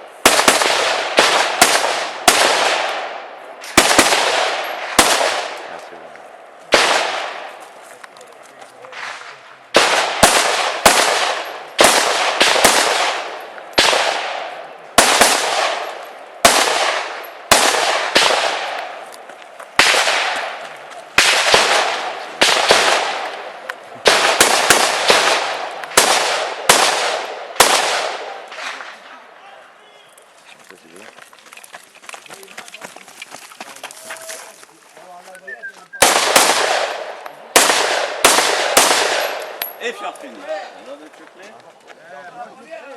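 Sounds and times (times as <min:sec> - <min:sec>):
rifle shots with echo: 0:00.1 - 0:06.0, 0:06.7 - 0:07.6, 0:08.9 - 0:19.1, 0:19.8 - 0:29.2, 0:36.0 - 0:39.9.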